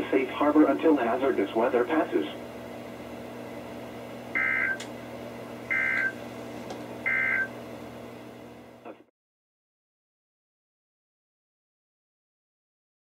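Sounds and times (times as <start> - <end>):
steady background hum: 0.0 - 9.1
warbling digital data tones: 4.4 - 4.8, 5.7 - 6.1, 7.1 - 7.5.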